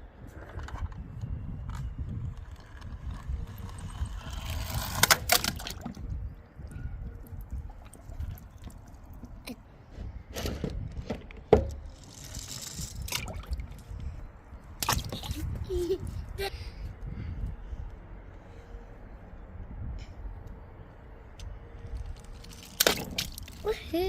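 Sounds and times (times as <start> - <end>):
toy cars splashing into water: 5.0 - 5.9, 22.5 - 23.7
toy cars clattering down a ramp: 11.7 - 13.1.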